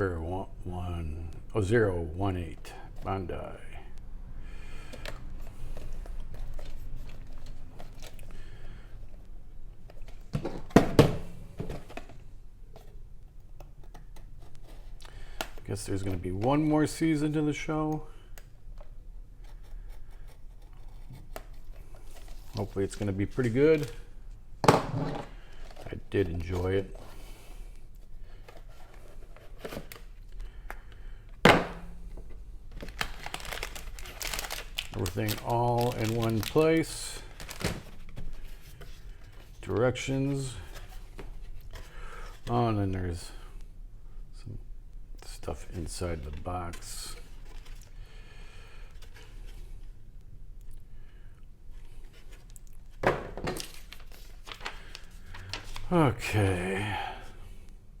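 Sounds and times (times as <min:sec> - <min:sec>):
packaging crinkling: 0:32.7 - 0:38.6, 0:53.5 - 0:55.9.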